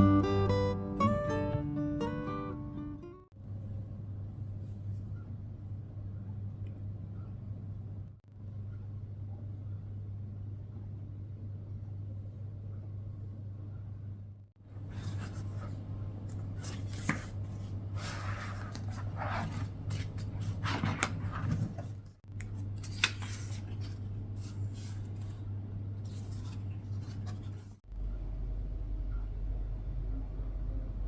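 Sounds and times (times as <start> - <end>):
steady low hum: 1.7 - 31.0
rustling and scraping: 14.8 - 22.2, 22.8 - 27.8.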